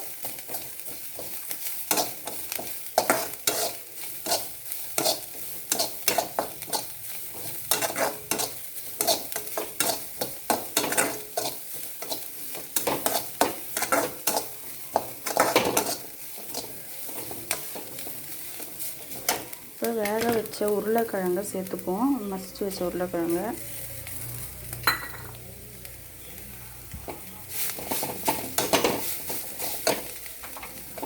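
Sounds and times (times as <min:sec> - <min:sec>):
vegetables sizzling in oil: 0:00.0 - 0:31.0
utensil scraping pan: 0:00.3 - 0:19.5, 0:27.1 - 0:31.0.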